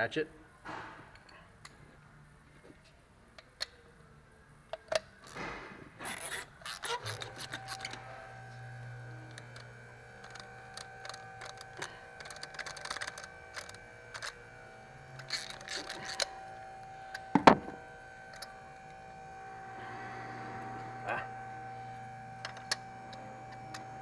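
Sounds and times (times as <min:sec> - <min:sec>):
steady hum: 0:03.1 - 0:24.0
ratchet clicking: 0:09.3 - 0:14.4, 0:15.1 - 0:17.6.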